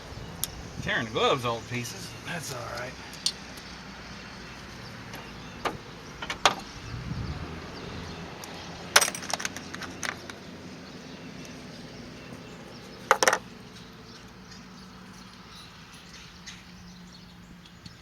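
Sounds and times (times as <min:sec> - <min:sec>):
metal tools clinking: 0:09.0 - 0:10.2, 0:13.1 - 0:13.9, 0:15.1 - 0:16.3.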